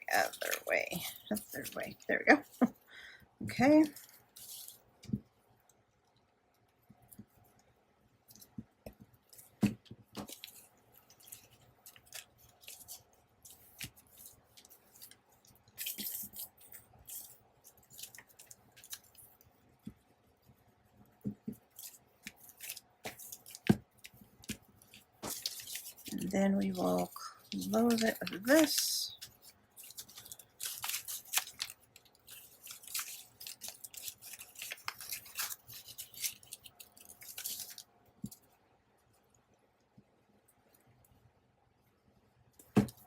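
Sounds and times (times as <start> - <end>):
paper rustling: 21.7 - 38.4.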